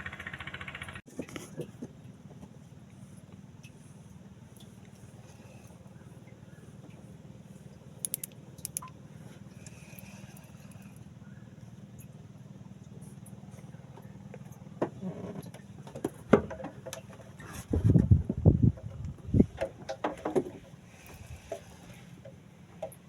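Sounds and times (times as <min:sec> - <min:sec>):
boat engine running: 0:00.0 - 0:23.0
sharp clicks: 0:08.0 - 0:09.0.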